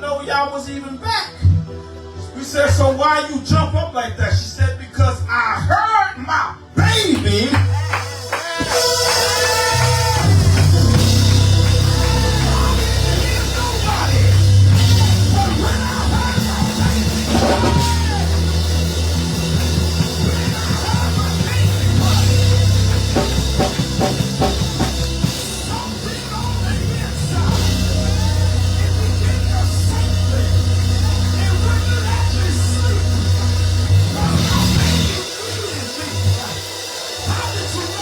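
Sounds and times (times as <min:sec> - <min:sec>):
loud band music: 0:06.7 - 0:38.0
drums: 0:06.8 - 0:38.0
steady bass line: 0:07.5 - 0:38.0.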